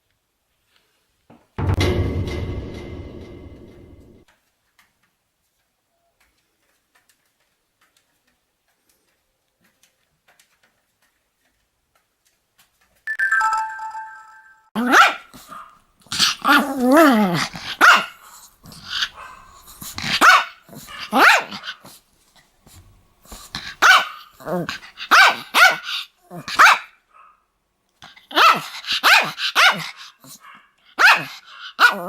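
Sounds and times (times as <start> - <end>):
brief high-pitched tone: 13.1 - 14.7
small dog yapping: 14.8 - 21.9, 23.6 - 27.4, 28.1 - 32.0.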